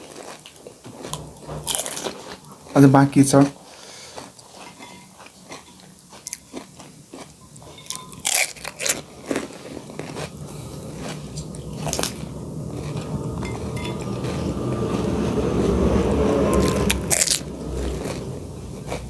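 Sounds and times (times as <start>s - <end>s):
crunchy food being chewed: 0.0s - 2.7s, 3.5s - 10.4s
low rumble: 0.9s - 3.7s, 8.6s - 19.0s.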